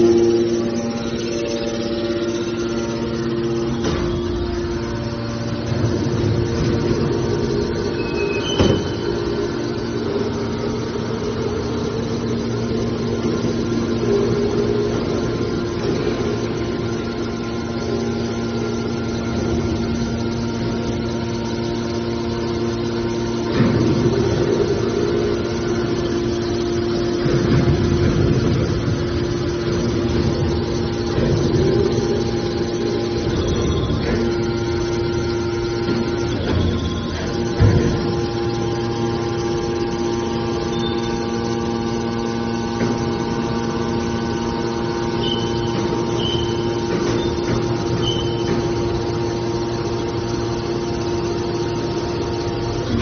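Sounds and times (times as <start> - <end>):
baler pump motor hum: 0.0 - 53.0
baler working noise surges: 0.0 - 53.0.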